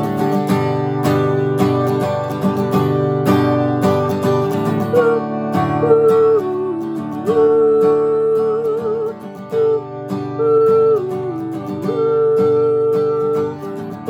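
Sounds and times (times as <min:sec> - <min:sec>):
strummed acoustic guitar: 0:00.0 - 0:14.0
person singing wordless melody: 0:04.6 - 0:14.0.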